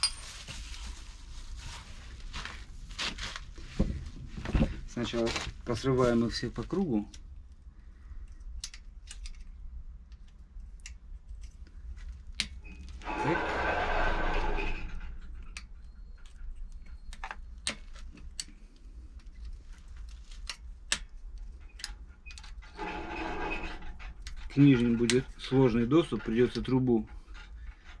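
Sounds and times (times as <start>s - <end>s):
scraping noise: 13.0s - 15.2s, 22.8s - 25.1s.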